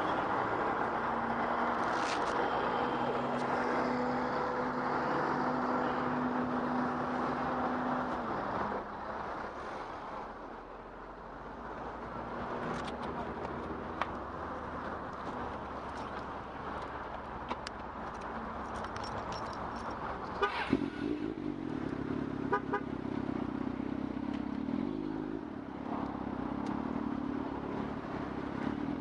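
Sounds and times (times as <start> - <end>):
road traffic noise: 0.0 - 29.0
long car horn: 20.4 - 20.8, 22.5 - 22.9.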